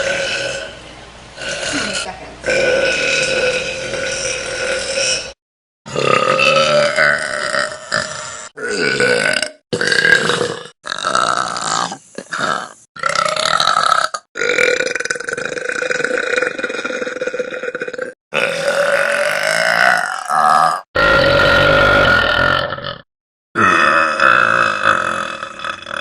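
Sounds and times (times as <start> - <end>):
girls burping: 1.4 - 8.0.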